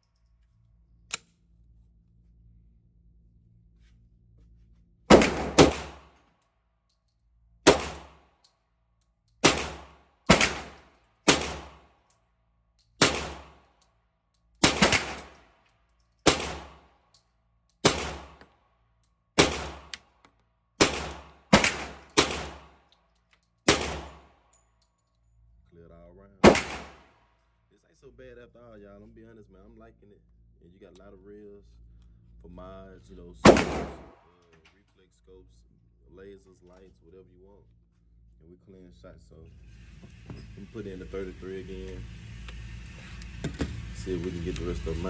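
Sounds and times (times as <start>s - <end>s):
pistol shots: 5.1s - 6.1s, 7.7s - 8.2s, 9.4s - 11.8s, 13.0s - 13.6s, 14.6s - 15.4s, 16.2s - 16.8s, 17.8s - 18.4s, 19.4s - 20.0s, 20.8s - 22.7s, 23.7s - 24.3s, 26.4s - 27.1s, 33.4s - 34.3s.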